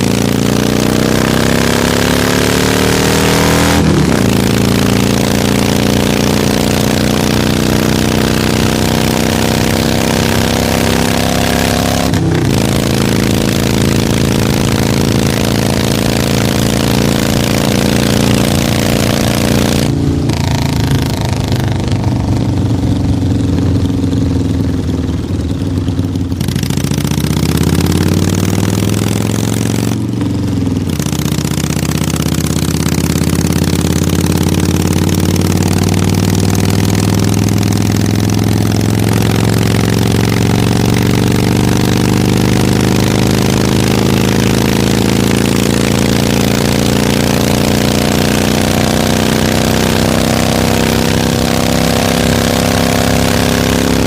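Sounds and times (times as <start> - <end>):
motorcycle engine accelerating: 0.0 - 54.0.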